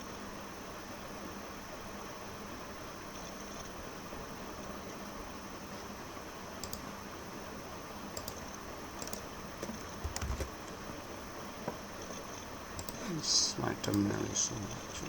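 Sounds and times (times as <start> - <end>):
steady hiss: 0.0 - 15.0
keyboard keystrokes: 6.6 - 6.9, 8.2 - 10.8, 12.0 - 13.0.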